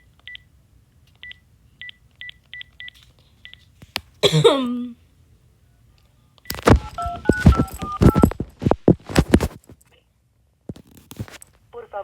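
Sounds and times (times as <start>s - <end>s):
phone keypad beeps: 1.2s - 3.6s, 6.4s - 8.3s.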